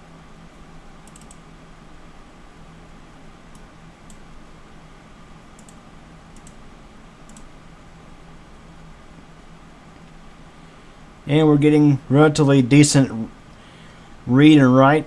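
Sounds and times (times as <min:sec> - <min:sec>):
computer equipment hum: 0:00.0 - 0:15.0
mouse clicks: 0:01.0 - 0:01.4, 0:05.6 - 0:05.8, 0:06.4 - 0:06.6, 0:07.2 - 0:07.5.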